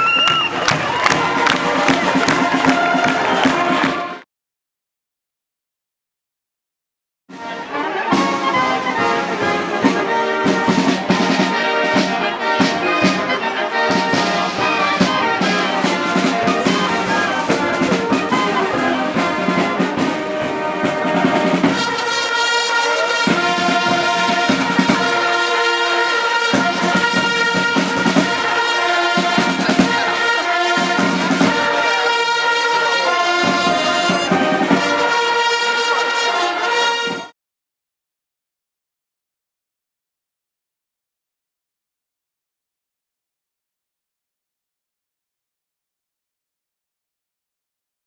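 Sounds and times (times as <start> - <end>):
brass band playing: 0.0 - 4.2, 7.3 - 37.4.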